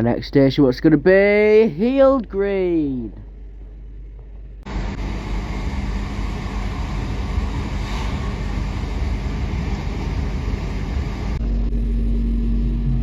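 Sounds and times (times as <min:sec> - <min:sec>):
train motor hum: 0:00.0 - 0:13.0
train wheels rumbling on rails: 0:03.1 - 0:11.4.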